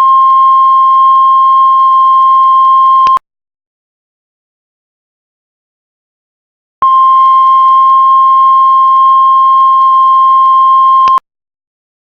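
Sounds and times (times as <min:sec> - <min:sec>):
heart monitor flatline beep: 0:00.0 - 0:03.2, 0:06.8 - 0:11.2.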